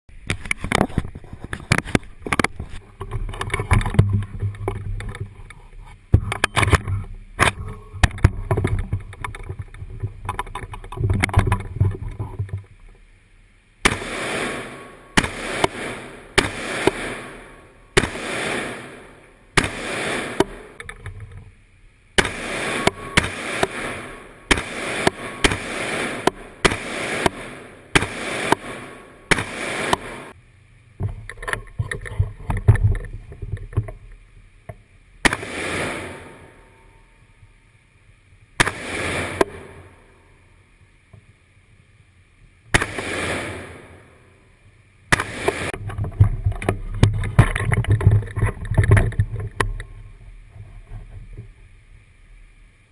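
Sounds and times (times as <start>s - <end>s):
gunshots with echo: 13.8s - 20.8s, 22.2s - 30.3s, 35.2s - 36.6s, 38.6s - 39.9s, 42.8s - 44.0s, 45.1s - 45.8s.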